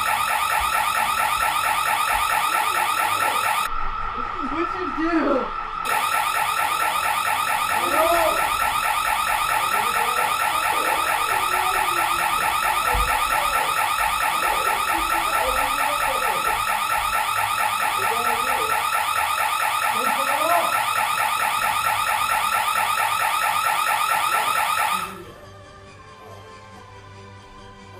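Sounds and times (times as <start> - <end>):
house alarm siren warbling: 0.0 - 25.3.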